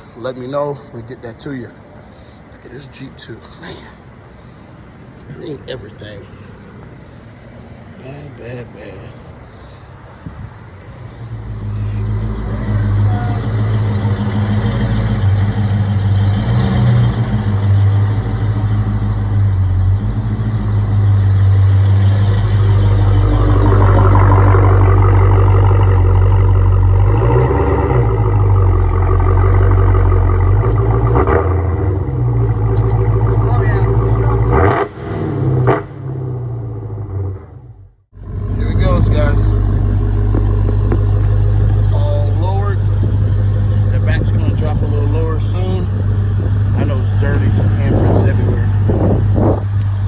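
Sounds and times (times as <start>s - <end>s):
deep car engine running: 11.3s - 50.0s.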